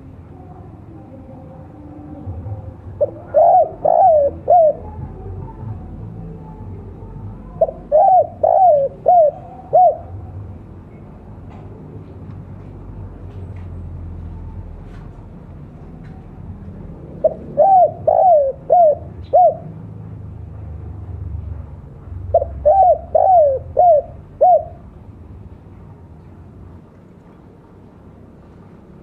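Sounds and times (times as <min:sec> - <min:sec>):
low steady rumble: 0:00.0 - 0:29.0
dove cooing: 0:02.3 - 0:05.8, 0:07.1 - 0:10.4, 0:17.1 - 0:19.9, 0:22.3 - 0:25.0.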